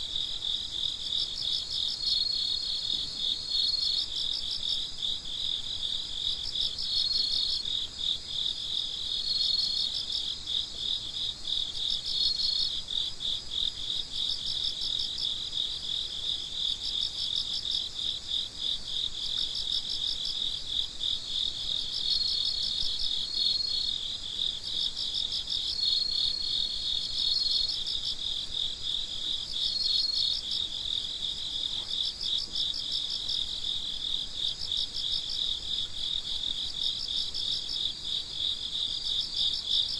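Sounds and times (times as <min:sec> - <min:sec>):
cricket chirps: 0:00.0 - 0:39.9
crickets trilling: 0:00.0 - 0:39.9.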